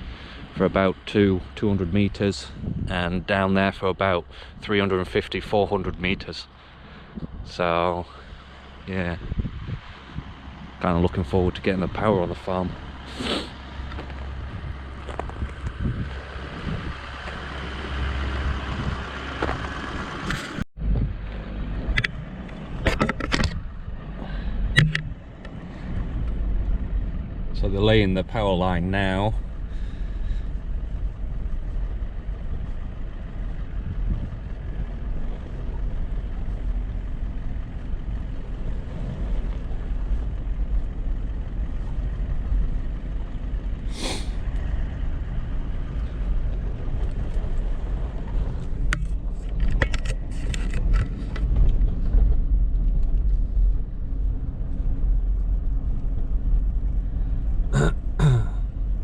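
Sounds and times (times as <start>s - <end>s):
vehicle engine and road rumble: 0.0s - 59.0s
clicks and rattles: 21.8s - 23.7s, 48.7s - 53.3s
brief pitched sound: 24.8s - 25.2s.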